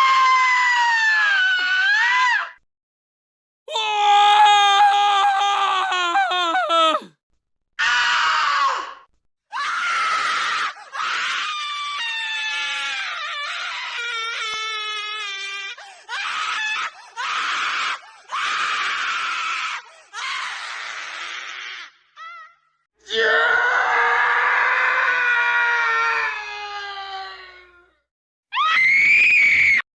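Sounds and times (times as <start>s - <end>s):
human screams: 0.0s - 2.6s, 3.7s - 7.1s, 7.8s - 15.5s, 16.1s - 27.8s, 28.5s - 29.9s.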